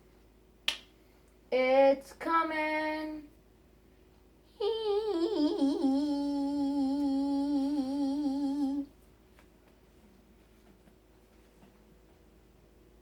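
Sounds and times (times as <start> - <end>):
child humming: 4.6 - 8.9.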